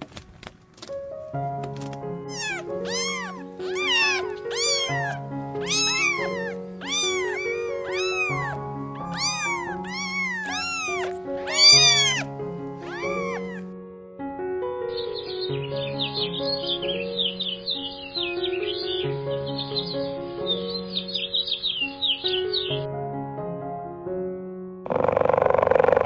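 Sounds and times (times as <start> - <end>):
animal calls rising and falling: 2.3 - 13.6.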